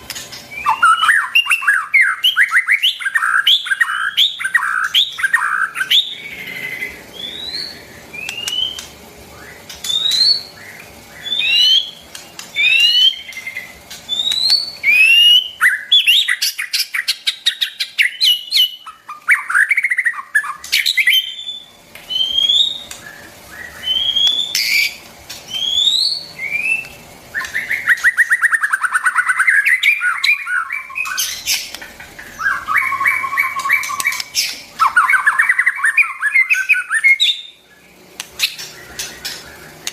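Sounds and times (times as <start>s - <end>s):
bird whistling and trilling: 0.2s - 39.9s
bird churring and rattling: 27.3s - 36.9s, 38.1s - 39.9s.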